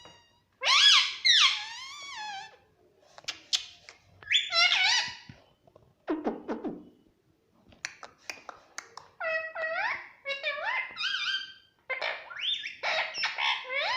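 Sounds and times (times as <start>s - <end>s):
parrot calling and chattering: 0.6s - 2.6s, 3.4s - 5.3s, 9.1s - 13.9s.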